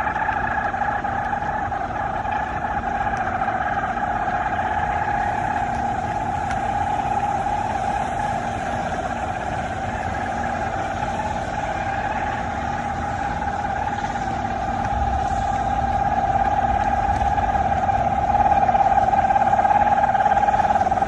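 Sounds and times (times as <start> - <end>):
loud steady droning hum: 0.0 - 21.0
low rumble: 0.0 - 21.0.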